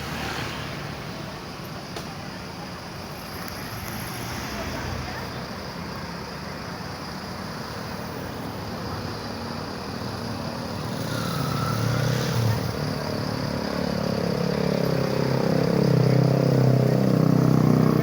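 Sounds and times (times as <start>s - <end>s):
vehicle engine approaching: 7.2s - 18.0s.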